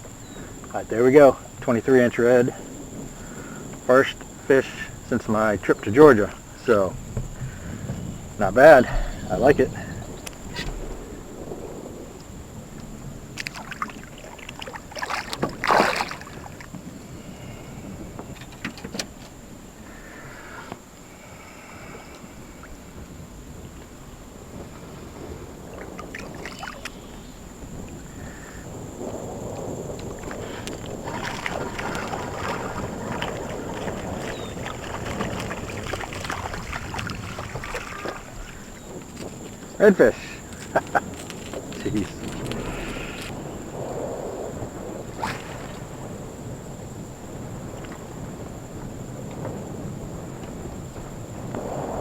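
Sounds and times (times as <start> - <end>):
steady low hiss: 0.0 - 15.0, 26.8 - 52.0
water slapping boat hull: 0.0 - 52.0
wind on microphone: 0.0 - 52.0
light knocks and splashes: 2.6 - 11.6, 12.2 - 16.9, 29.0 - 43.4, 45.2 - 46.1
knocks in a small boat: 6.0 - 11.6, 18.0 - 19.5
brief rushing burst: 8.6 - 12.0.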